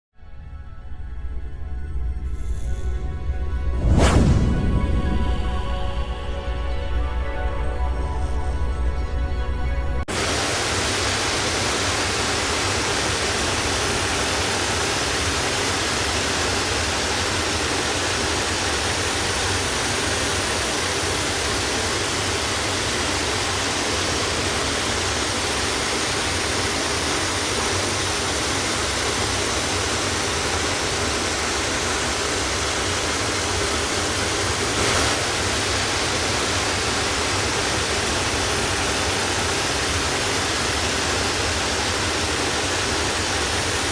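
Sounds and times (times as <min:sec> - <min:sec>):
waterfall rushing: 0:10.1 - 0:43.9.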